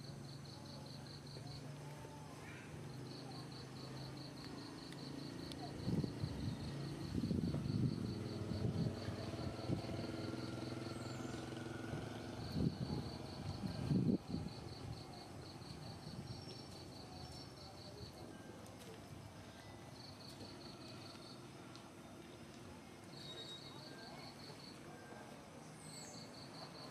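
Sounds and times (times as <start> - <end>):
insect chirping trill: 23.1 - 25.1.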